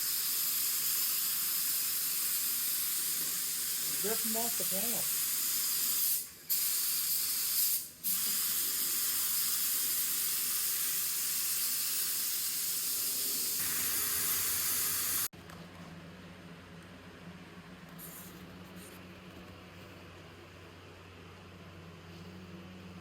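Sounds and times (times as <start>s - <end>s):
paint spray gun hissing: 0.0s - 15.3s.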